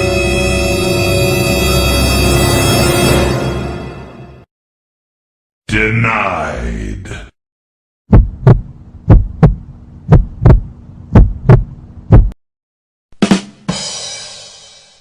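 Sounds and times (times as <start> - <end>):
heartbeat thumps: 8.1 - 12.4.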